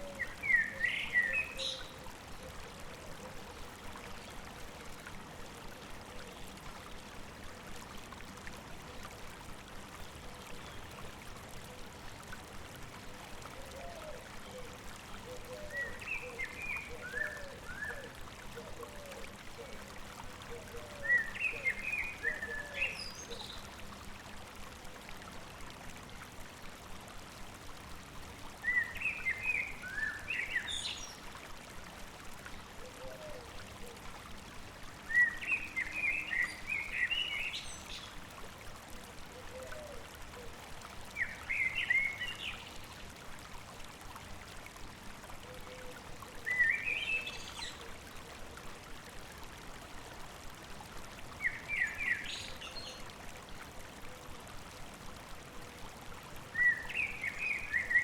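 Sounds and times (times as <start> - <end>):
stream babbling: 0.0 - 58.0
songbird phrases: 0.2 - 2.6, 28.6 - 31.2, 46.4 - 47.9, 51.4 - 53.0, 56.5 - 58.0.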